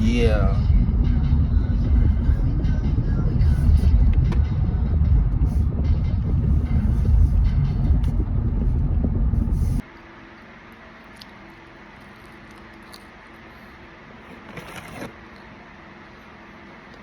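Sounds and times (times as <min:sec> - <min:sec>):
car road and engine rumble: 0:00.0 - 0:17.0.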